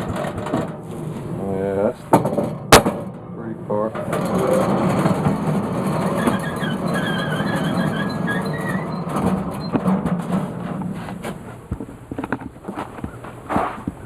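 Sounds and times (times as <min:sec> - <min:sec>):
wavering saw squeal: 0:06.2 - 0:09.0.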